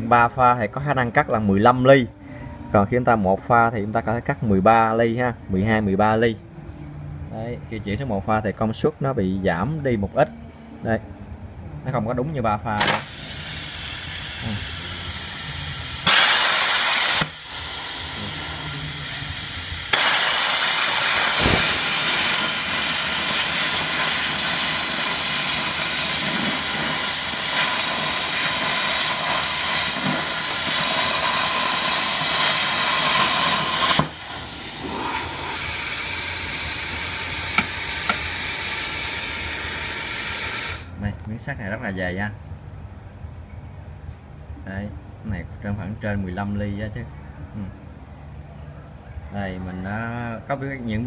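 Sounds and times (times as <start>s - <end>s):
brief loud burst: 12.8s - 14.0s, 16.0s - 18.2s, 19.9s - 23.9s
plasma cutter arc hissing: 12.8s - 40.9s
soft air hiss: 12.8s - 41.0s.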